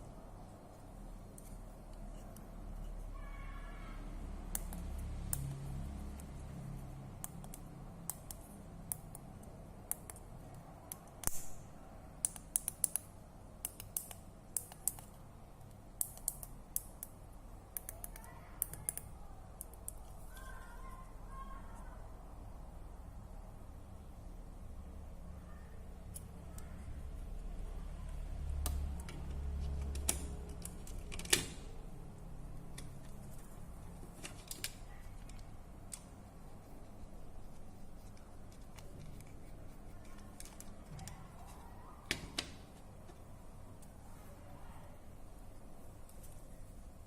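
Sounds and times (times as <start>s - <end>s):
low steady background: 0.0s - 47.0s
faint high-pitched call: 3.0s - 4.2s
sharp clicks and taps: 4.5s - 6.3s, 7.2s - 11.6s, 12.2s - 20.6s, 28.5s - 31.7s.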